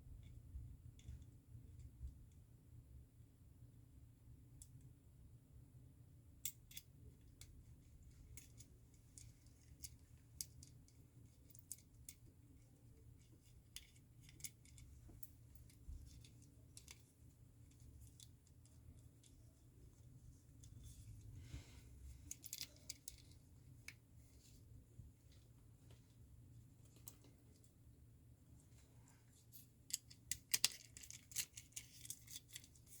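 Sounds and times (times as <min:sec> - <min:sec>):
low steady hum: 0:00.0 - 0:33.0
small metallic clicks: 0:22.2 - 0:24.0, 0:29.8 - 0:33.0.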